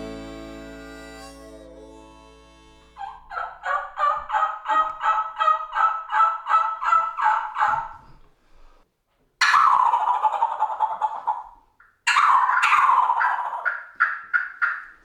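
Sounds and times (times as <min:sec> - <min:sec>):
guitar music: 0:00.0 - 0:03.3
turkey yelps: 0:03.0 - 0:08.0, 0:09.4 - 0:15.0.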